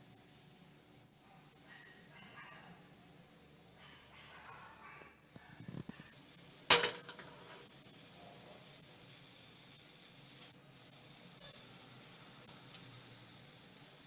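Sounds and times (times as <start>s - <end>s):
utensil knocking on cookware: 6.7s - 7.6s.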